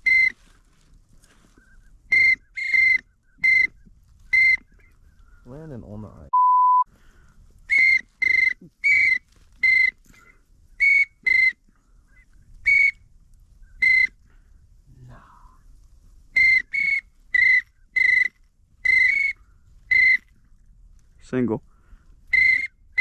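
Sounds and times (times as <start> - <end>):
duck whistle toots: 0.0 - 0.4, 1.6 - 4.9, 7.7 - 10.0, 10.8 - 11.6, 12.6 - 13.0, 13.8 - 14.2, 16.3 - 20.3, 22.3 - 23.0.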